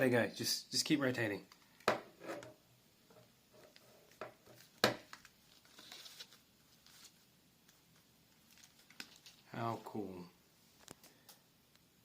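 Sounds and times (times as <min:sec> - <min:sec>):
pad material rustling: 0:03.6 - 0:09.5.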